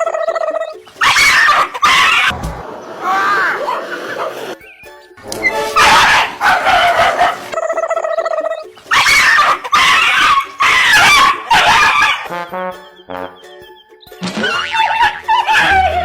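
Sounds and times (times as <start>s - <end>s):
dog barking: 1.0s - 2.3s, 5.7s - 7.6s, 8.9s - 12.3s, 14.8s - 16.0s.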